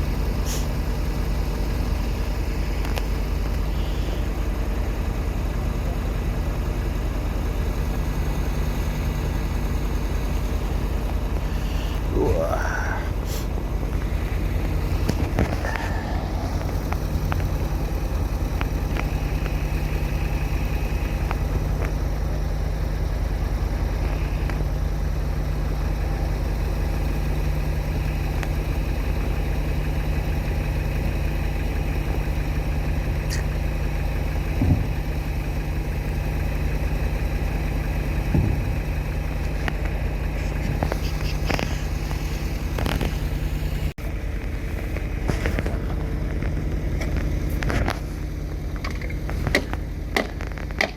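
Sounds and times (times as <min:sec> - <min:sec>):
vehicle engine idling: 0:00.0 - 0:50.9
knocks and clanks: 0:34.5 - 0:35.1, 0:38.2 - 0:39.0.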